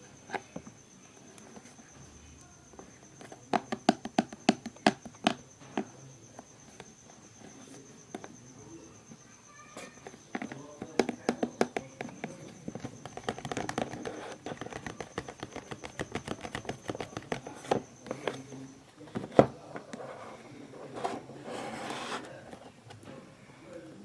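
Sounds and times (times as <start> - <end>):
faint high whine: 0.0 - 24.0
packaging clicking and crinkling: 12.1 - 18.5.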